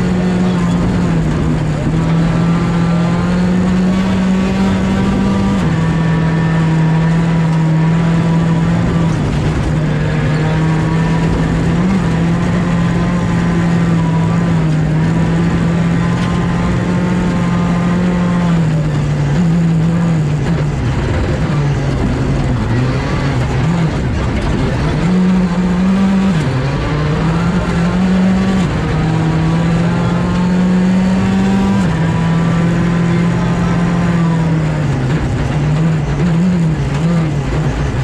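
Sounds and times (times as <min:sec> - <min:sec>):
rally car engine at high revs: 0:00.0 - 0:38.0
tyre and road noise: 0:00.0 - 0:38.0.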